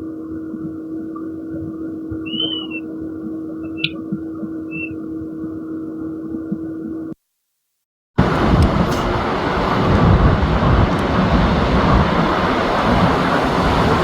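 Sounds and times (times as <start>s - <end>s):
short high chirps: 2.3s - 2.8s, 3.6s - 4.0s, 4.7s - 5.0s
low rumble: 8.2s - 14.0s
machine hum: 8.2s - 14.0s.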